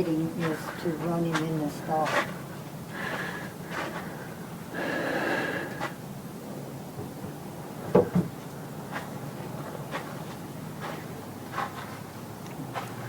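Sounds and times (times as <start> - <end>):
sharp knocks: 7.0 - 8.3.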